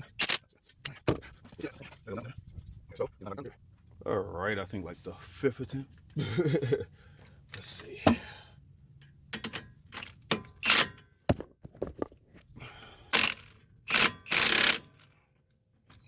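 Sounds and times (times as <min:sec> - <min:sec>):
loud noisy tool bursts: 0:13.2 - 0:15.0.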